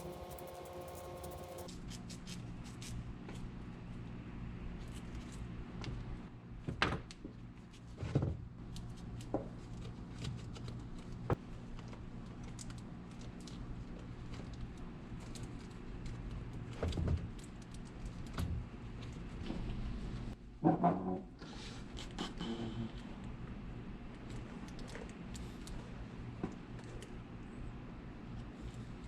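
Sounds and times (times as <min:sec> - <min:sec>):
steady low hum: 0:00.0 - 0:01.7.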